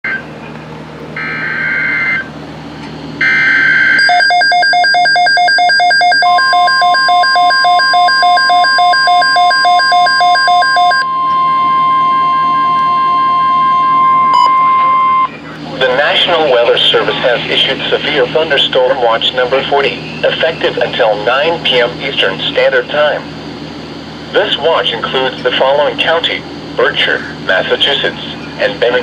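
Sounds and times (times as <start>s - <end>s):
rapid electronic alarm beeping: 1.2s - 2.3s, 3.2s - 15.4s
steady high alert tone: 3.2s - 18.4s.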